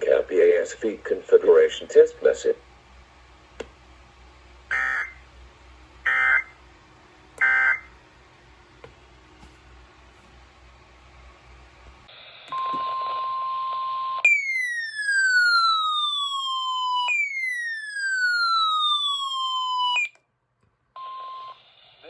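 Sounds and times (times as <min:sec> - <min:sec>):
radio hiss: 0:00.0 - 0:02.6, 0:12.1 - 0:12.5
electronic siren sweeping down: 0:04.7 - 0:05.2, 0:14.3 - 0:20.2
steady warning alarm tone: 0:04.7 - 0:05.2, 0:06.0 - 0:06.6, 0:07.4 - 0:07.9, 0:14.3 - 0:20.2.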